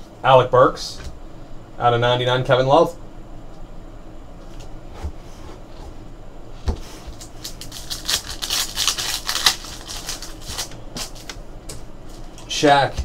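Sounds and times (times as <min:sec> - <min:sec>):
cards rustling and flicking: 0:07.0 - 0:11.4.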